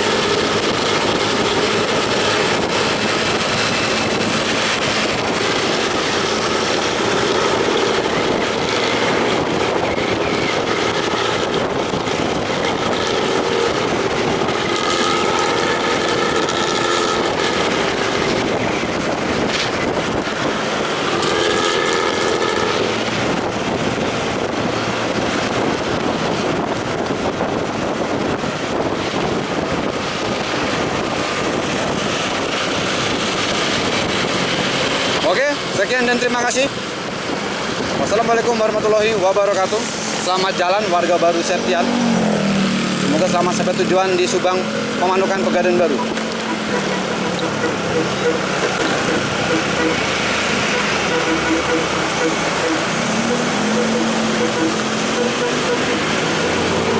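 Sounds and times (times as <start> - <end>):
bus engine growling exhaust: 0.0 - 56.9
multi-tone horn: 12.4 - 19.6, 20.3 - 23.5, 45.3 - 56.9.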